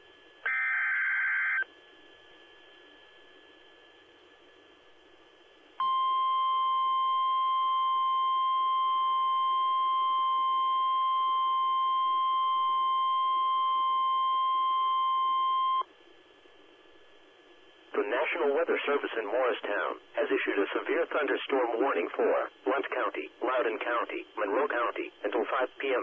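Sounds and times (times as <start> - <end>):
loud steady alarm beep: 0.4 - 1.7, 5.8 - 15.8
faint radio hiss: 15.8 - 26.0.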